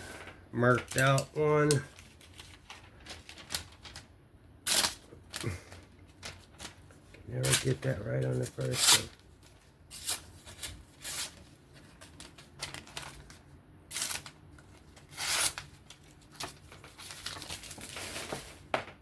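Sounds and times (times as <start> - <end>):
paper rustling and crinkling: 0.6 - 18.7
knife slicing paper: 15.0 - 15.7.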